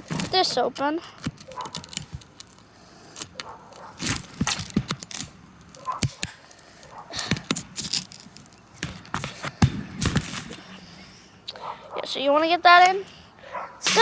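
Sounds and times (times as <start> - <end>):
tool cracking and scraping casing: 1.1 - 10.6.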